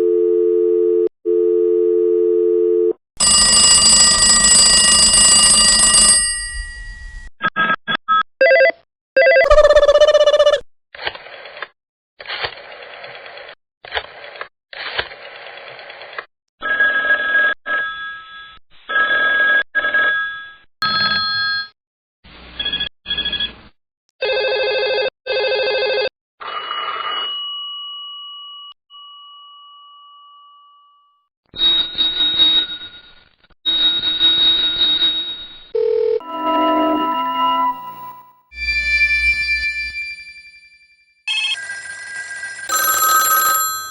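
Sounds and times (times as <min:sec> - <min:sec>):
long steady telephone tone: 0:00.0 - 0:07.0, 0:41.3 - 0:43.9
phone ringing: 0:01.9 - 0:07.2, 0:35.8 - 0:38.4, 0:41.3 - 0:43.9
electronic ringtone melody: 0:03.2 - 0:07.0, 0:36.2 - 0:38.8, 0:41.3 - 0:43.9.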